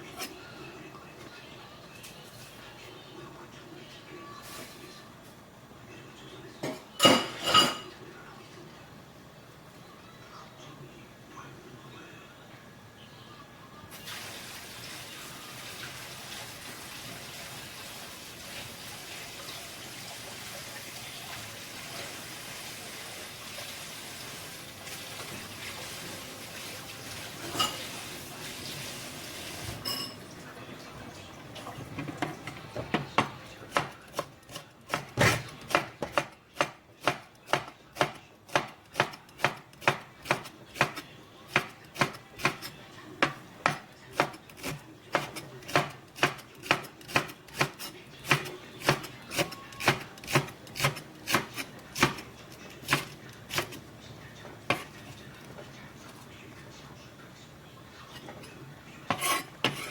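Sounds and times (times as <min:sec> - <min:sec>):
running water: 0:14.0 - 0:32.9
knife chopping on cutting board: 0:33.0 - 0:53.8.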